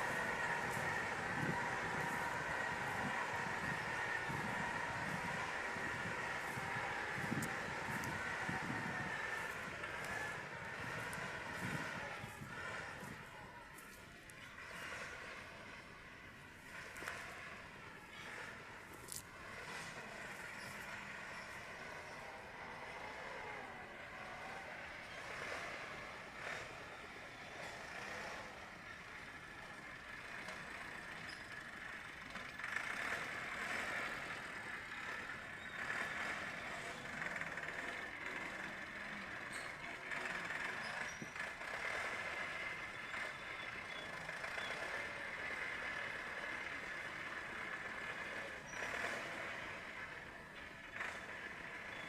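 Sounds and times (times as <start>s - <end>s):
tractor diesel engine running: 0.0s - 52.0s.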